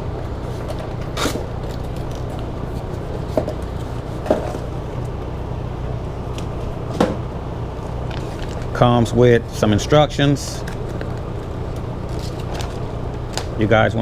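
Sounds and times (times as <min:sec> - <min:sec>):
low background hum: 0:00.0 - 0:14.0
packaging clicks and rustles: 0:08.0 - 0:08.8.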